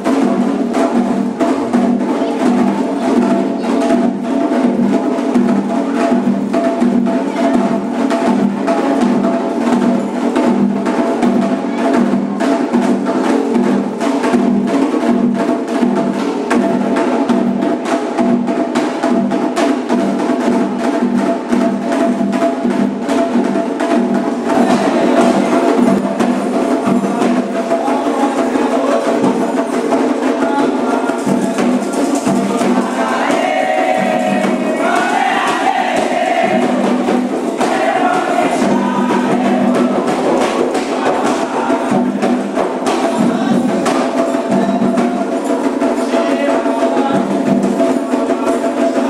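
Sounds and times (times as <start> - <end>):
drums and hand percussion: 0.0 - 49.0
voices singing: 23.9 - 49.0.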